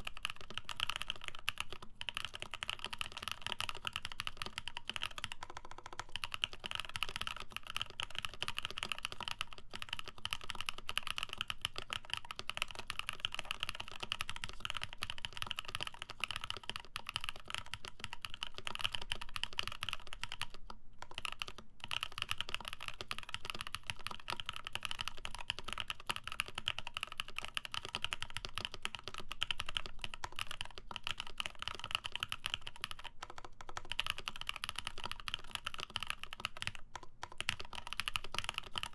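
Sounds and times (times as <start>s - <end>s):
fast typing on mechanical keyboard: 0.0s - 38.9s.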